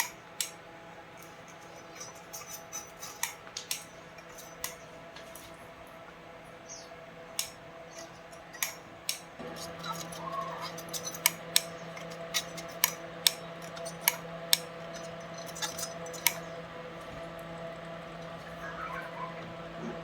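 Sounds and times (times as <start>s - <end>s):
electrical hum: 0.0s - 20.0s
small hand tools clicking: 1.2s - 4.8s, 7.4s - 16.5s.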